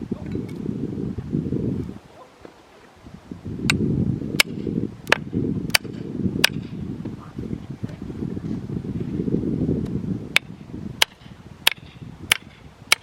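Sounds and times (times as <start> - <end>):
firewood being chopped: 4.4 - 6.7, 10.3 - 13.0.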